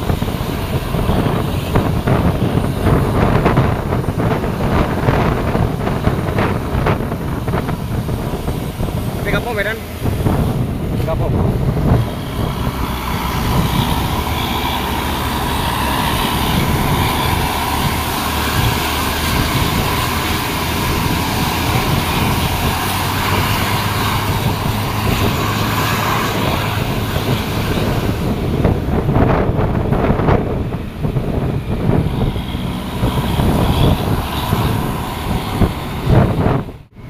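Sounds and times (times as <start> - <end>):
large vehicle engine hum: 0.0 - 37.0
road noise: 0.0 - 37.0.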